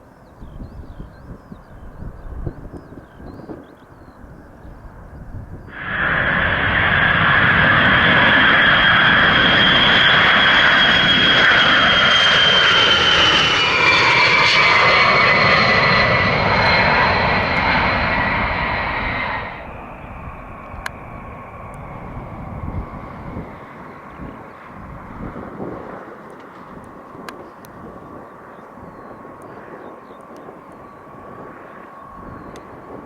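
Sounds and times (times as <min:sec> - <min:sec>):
jet engines roaring: 0:01.9 - 0:33.0
high whine dropping in pitch: 0:05.7 - 0:23.5.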